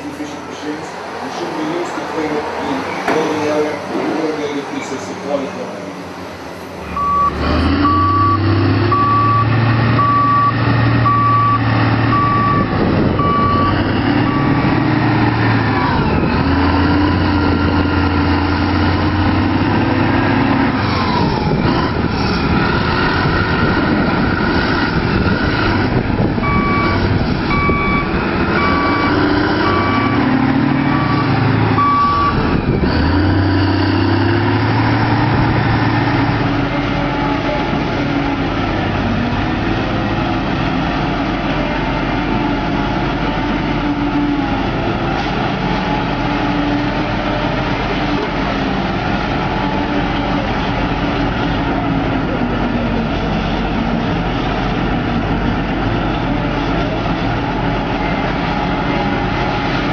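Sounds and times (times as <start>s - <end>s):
heavy diesel machinery: 0.0s - 59.9s
reversing alarm beeping: 6.9s - 14.7s, 26.4s - 32.5s.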